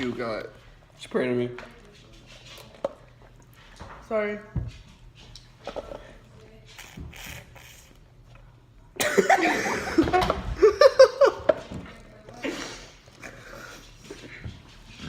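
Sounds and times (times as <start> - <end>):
person coughing: 9.0 - 9.8.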